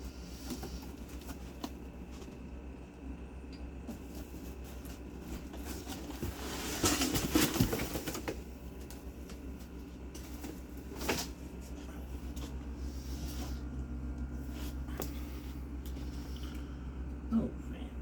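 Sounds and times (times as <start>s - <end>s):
steady low hum: 0.0s - 18.0s
rustling of packaging: 3.9s - 13.6s.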